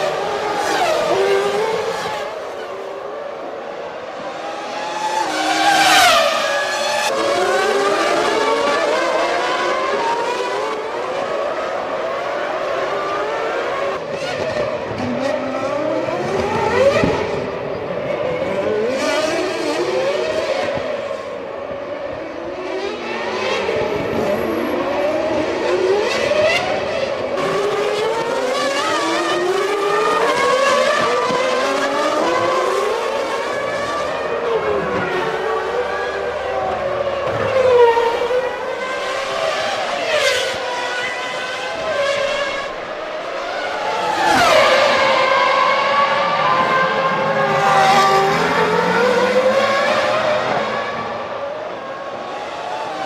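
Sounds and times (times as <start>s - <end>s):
racing car engines revving: 0.0s - 53.0s
racing car passing loudly: 0.0s - 53.0s.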